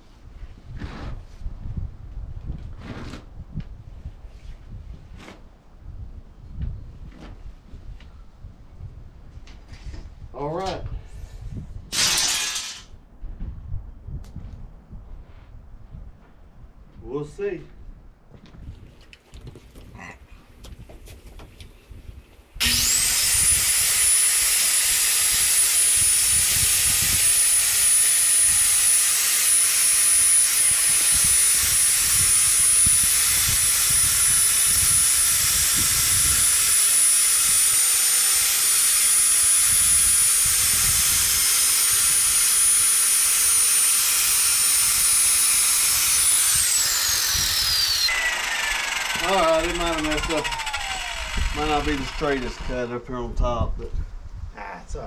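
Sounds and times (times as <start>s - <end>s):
power saw whining: 11.9s - 12.8s, 22.6s - 52.9s.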